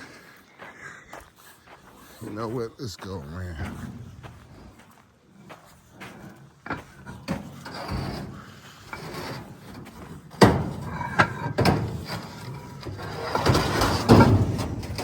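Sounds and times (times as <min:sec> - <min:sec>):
knocks rubs and scrapes of handling: 0:06.0 - 0:15.0.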